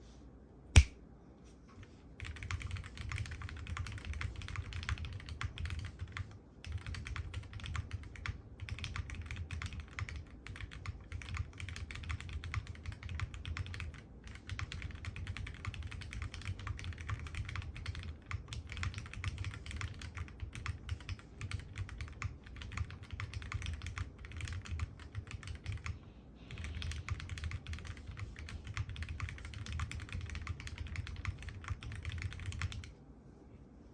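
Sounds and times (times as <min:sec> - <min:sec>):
sharp click: 0:00.7 - 0:01.0
mechanical keyboard typing: 0:02.2 - 0:32.9.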